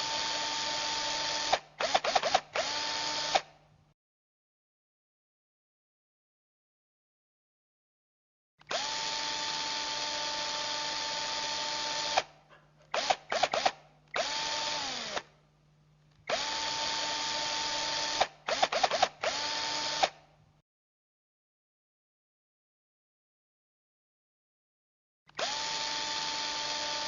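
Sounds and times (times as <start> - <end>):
electric power drill running: 0.0 - 3.5, 8.7 - 12.3, 13.0 - 15.3, 16.3 - 20.2, 25.4 - 27.0.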